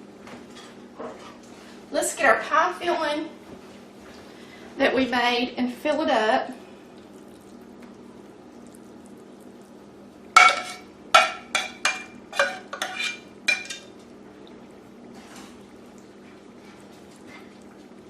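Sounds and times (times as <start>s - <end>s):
metal spoon scraping a pot: 10.4s - 10.8s, 11.5s - 13.8s.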